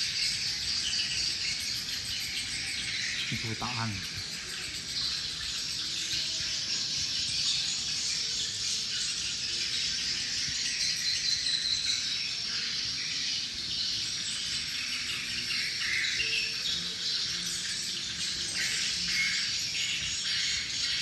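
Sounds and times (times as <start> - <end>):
swiftlets twittering chorus: 2.9 - 4.9.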